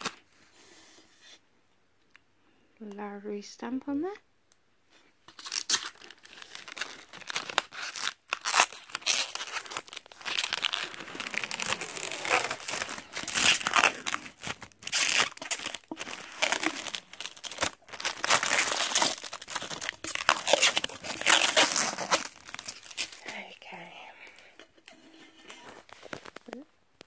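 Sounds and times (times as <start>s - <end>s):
packaging crinkling and rustling: 5.3s - 23.7s, 24.3s - 27.0s.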